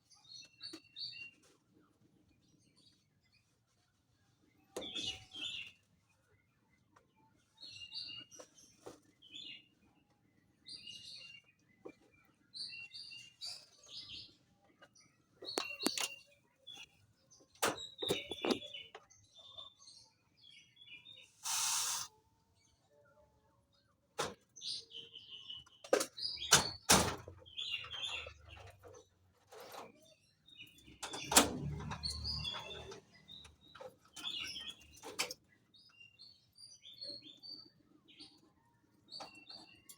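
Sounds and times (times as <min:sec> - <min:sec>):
brief hiss: 0:21.4 - 0:22.2.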